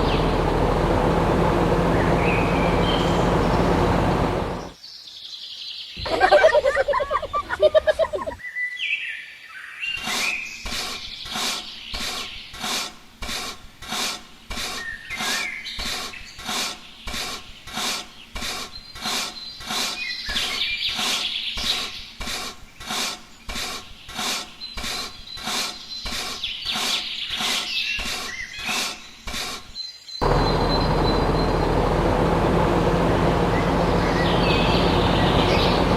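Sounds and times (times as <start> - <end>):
hand tool rasping strokes: 10.0 - 29.8.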